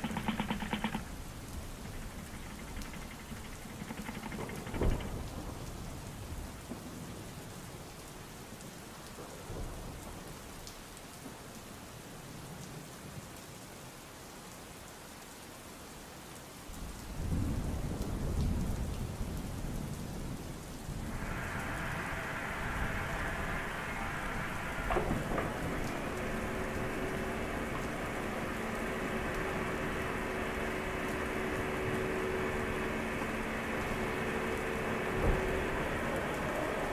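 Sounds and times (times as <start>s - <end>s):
heavy rain: 0.0s - 36.9s
low thunder rumble: 16.8s - 36.9s
thunder clap: 17.2s - 36.9s
vacuum cleaner humming: 21.0s - 36.9s.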